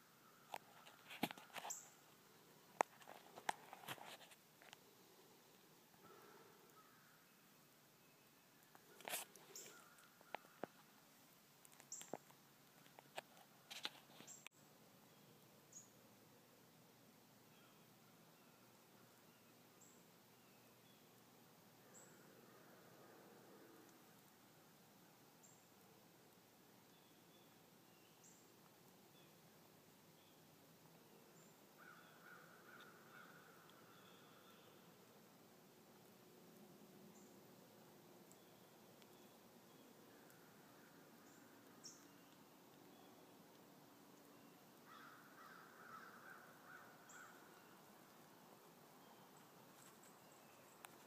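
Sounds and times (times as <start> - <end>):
faint clicks and rustles: 0.5 - 6.1, 8.6 - 14.6, 49.2 - 51.0.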